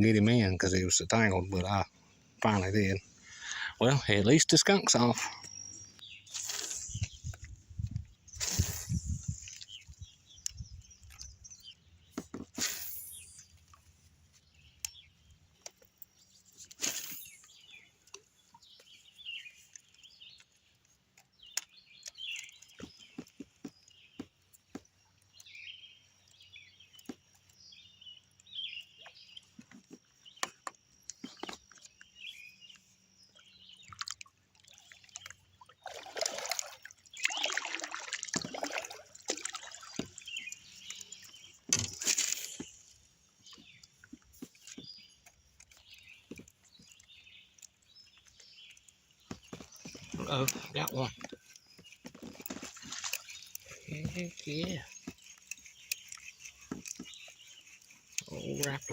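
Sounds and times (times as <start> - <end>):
birds singing and chirping: 0.0 - 58.9
small clicks and knocks: 28.3 - 32.9, 39.9 - 58.8
water splashing and sloshing: 33.3 - 47.0, 47.6 - 58.9.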